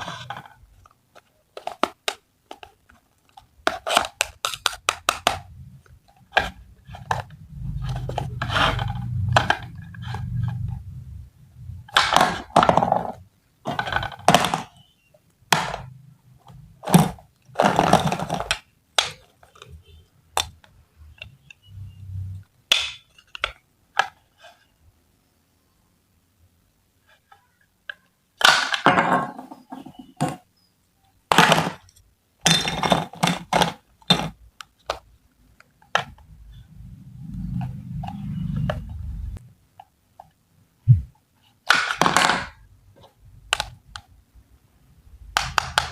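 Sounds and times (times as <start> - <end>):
toys scraping: 6.3 - 10.9.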